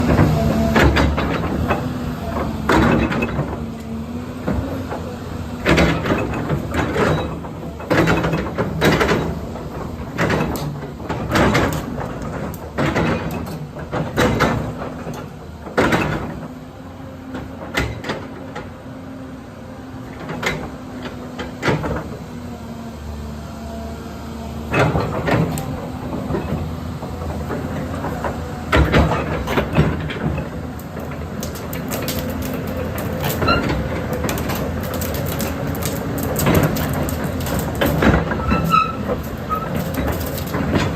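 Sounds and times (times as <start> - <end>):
excavator diesel engine running: 0.0 - 40.9
metal clanks and knocks: 5.6 - 16.5, 24.7 - 40.9.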